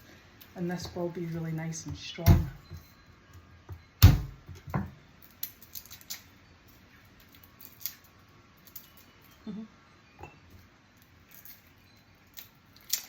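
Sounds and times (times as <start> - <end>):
garlic skins crackling: 11.2 - 13.0.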